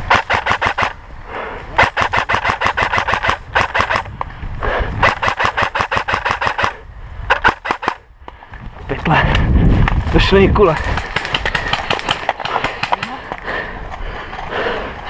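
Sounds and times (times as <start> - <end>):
airsoft rifle full auto bursts: 1.8 - 4.0.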